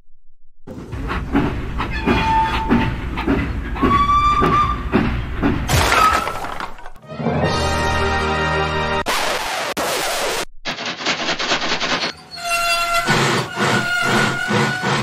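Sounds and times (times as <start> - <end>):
cartoon locomotive chugging: 0.7 - 5.7, 10.7 - 15.0
train whistle toots: 1.9 - 2.9, 3.8 - 4.9, 12.3 - 15.0.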